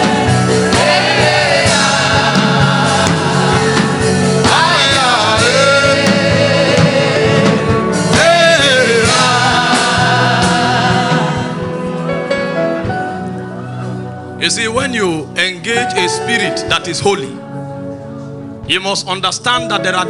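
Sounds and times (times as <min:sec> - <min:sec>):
person singing gospel: 0:00.0 - 0:12.2
sustained instrumental chords: 0:00.0 - 0:20.0.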